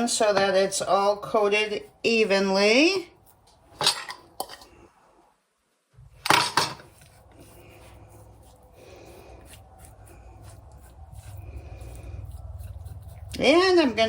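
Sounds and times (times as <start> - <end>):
steady low hum: 6.0 - 14.0.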